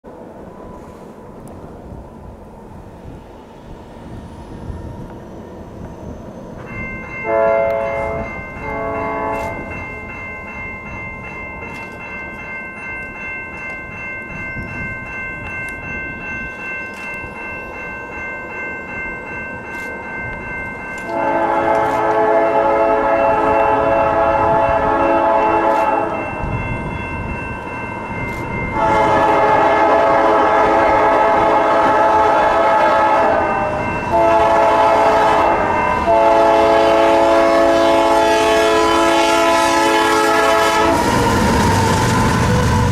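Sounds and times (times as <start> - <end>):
train rumbling: 0.0 - 42.9
steady high ringing tone: 3.1 - 30.1, 33.2 - 37.6
locomotive air horn blasts: 7.2 - 9.7, 21.1 - 26.2, 28.7 - 41.9.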